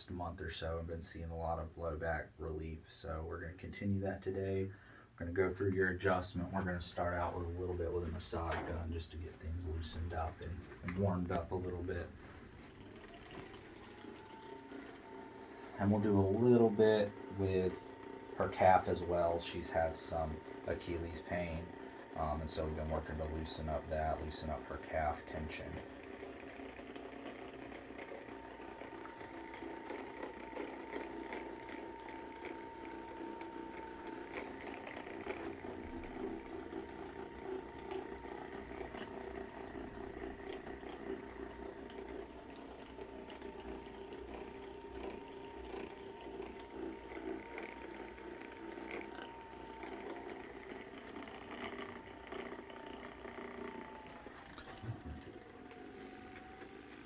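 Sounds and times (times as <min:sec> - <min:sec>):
massage gun motor buzzing: 0:04.2 - 0:57.0.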